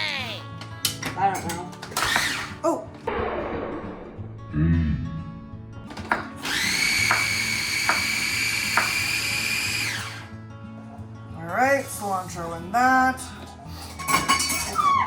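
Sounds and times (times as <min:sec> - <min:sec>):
food processor motor whine: 0:02.0 - 0:02.6, 0:05.9 - 0:10.3.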